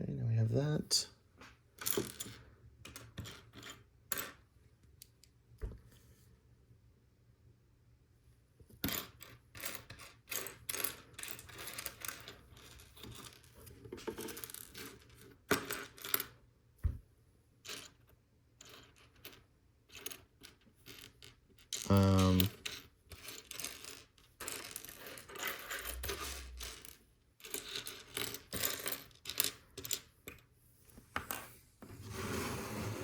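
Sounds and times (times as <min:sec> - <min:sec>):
plastic pieces rustling and rattling: 0:23.2 - 0:30.0.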